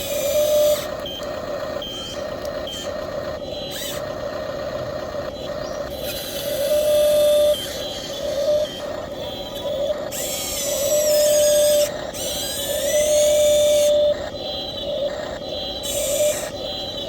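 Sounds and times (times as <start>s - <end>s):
model excavator motors whining: 0.0s - 17.0s.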